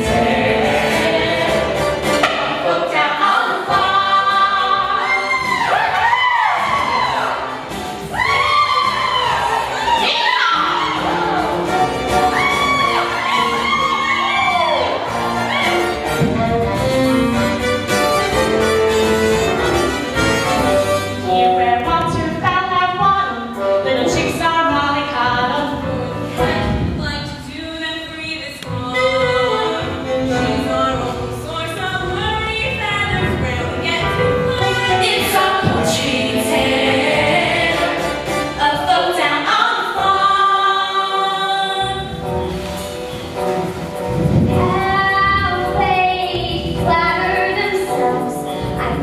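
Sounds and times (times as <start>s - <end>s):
chorus singing: 0.0s - 21.1s, 28.7s - 42.9s
instrumental accompaniment: 0.0s - 27.7s.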